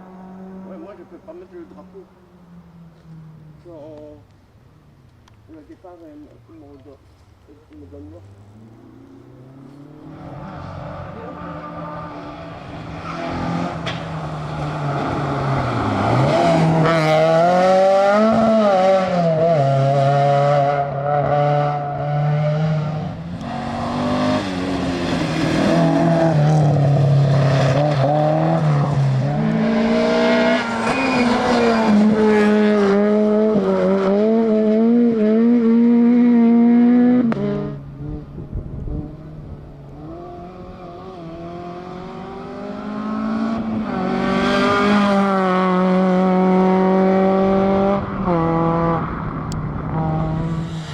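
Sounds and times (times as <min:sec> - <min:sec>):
rally car engine revving: 0:07.8 - 0:50.9
tyre squeal: 0:30.6 - 0:32.0.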